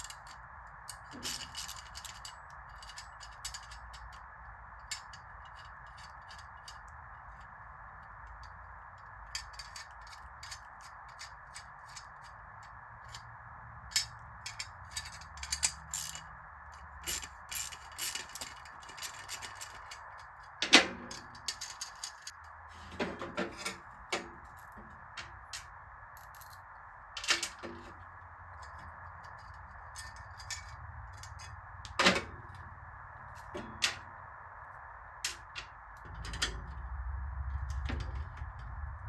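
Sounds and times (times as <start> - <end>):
metal clanks of exhaust tips: 17.0 - 25.7, 28.6 - 32.7, 33.3 - 34.2, 35.2 - 39.0.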